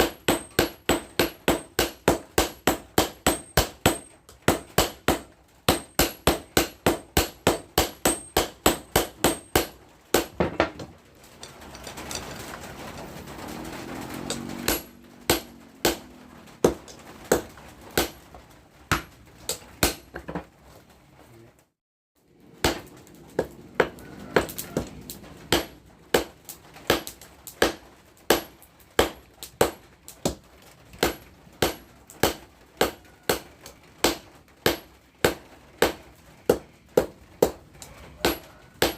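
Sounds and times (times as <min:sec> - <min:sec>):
hammer striking steel: 0:00.0 - 0:10.8, 0:14.2 - 0:18.2, 0:22.6 - 0:29.8, 0:38.2 - 0:38.9.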